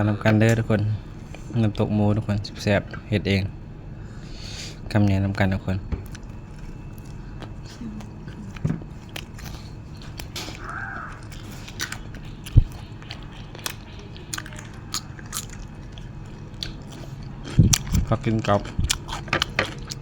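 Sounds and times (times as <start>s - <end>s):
chewing and crunching: 6.0s - 20.0s.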